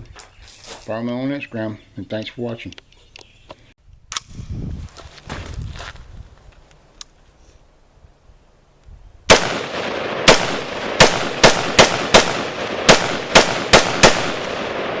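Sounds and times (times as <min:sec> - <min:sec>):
sharp loud bangs: 0:09.3 - 0:15.0.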